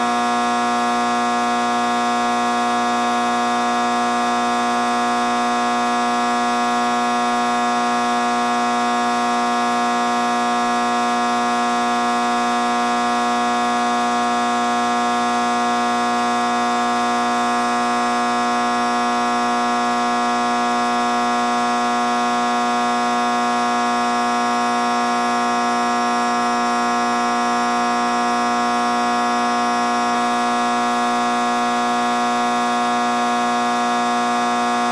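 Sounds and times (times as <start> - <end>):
loud steady drone: 2.0 - 24.7.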